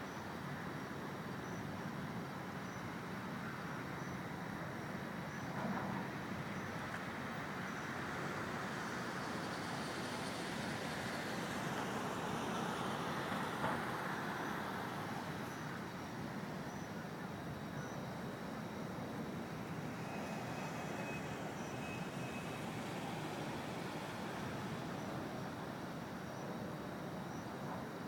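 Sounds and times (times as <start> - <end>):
city traffic noise: 0.1 - 28.0.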